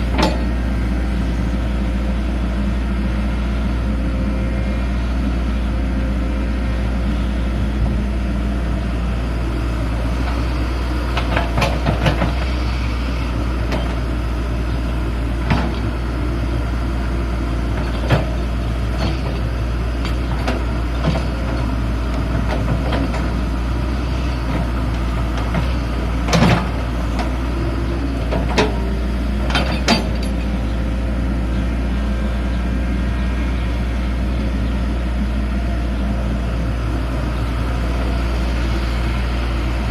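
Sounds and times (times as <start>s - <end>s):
excavator diesel engine droning: 0.0s - 39.9s
sharp knocks and clanks: 28.3s - 30.4s.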